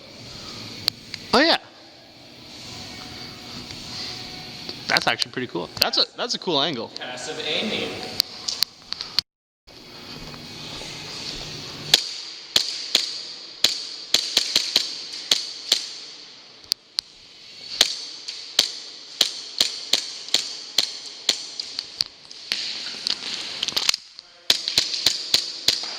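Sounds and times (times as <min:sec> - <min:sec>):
steady hiss: 0:00.0 - 0:08.1, 0:08.8 - 0:25.9
airsoft rifle shots cracking: 0:11.9 - 0:16.3, 0:17.7 - 0:22.8, 0:23.9 - 0:25.9.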